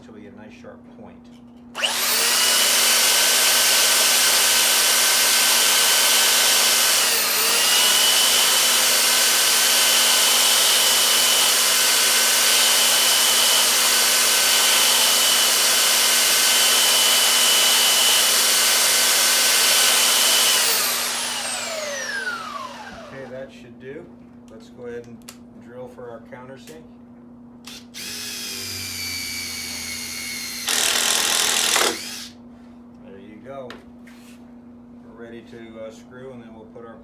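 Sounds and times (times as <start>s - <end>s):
belt sander running: 1.8s - 23.3s, 27.7s - 32.4s
metal bit grinding on belt: 27.9s - 32.3s.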